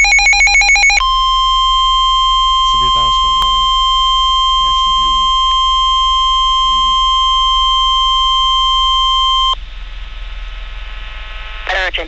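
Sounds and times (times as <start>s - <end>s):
steady electronic alert tone: 0.0s - 9.6s
faint voices: 2.7s - 3.6s.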